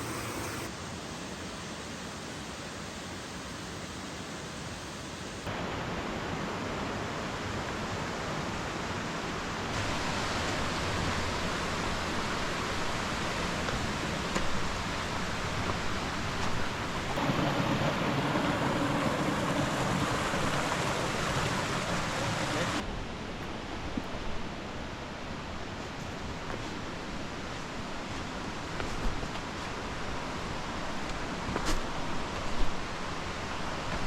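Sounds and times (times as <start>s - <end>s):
mountain stream rushing: 0.0s - 1.8s, 5.5s - 22.9s, 26.6s - 34.0s.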